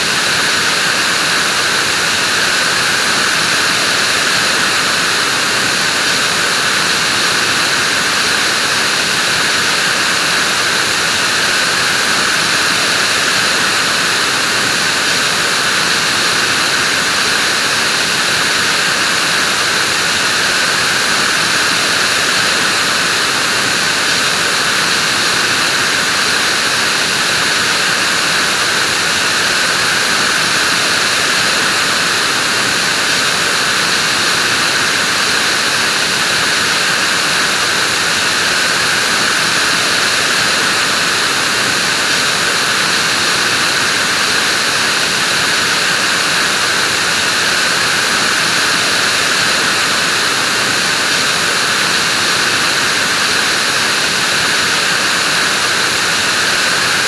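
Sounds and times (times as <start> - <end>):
vacuum cleaner running: 0.0 - 57.0.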